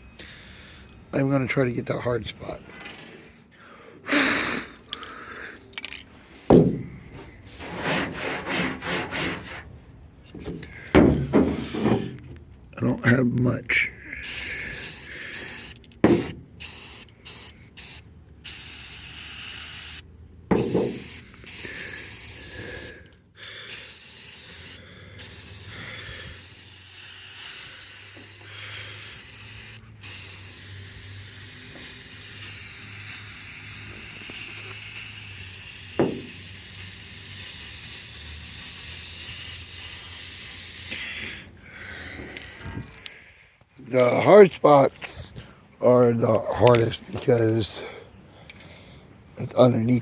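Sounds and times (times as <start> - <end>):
spray paint can spraying: 14.2 - 41.1.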